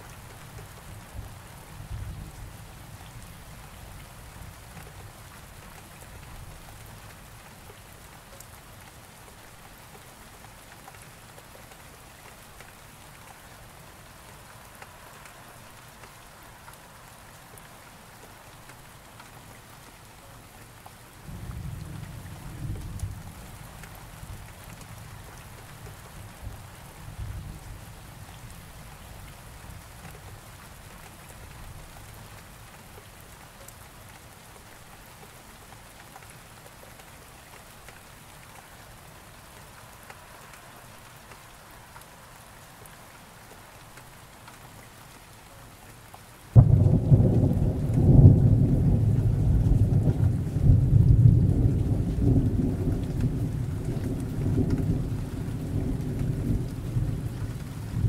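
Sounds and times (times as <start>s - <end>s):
steady rain falling: 0.0s - 58.0s
low rumble of thunder: 21.3s - 25.5s, 46.6s - 58.0s.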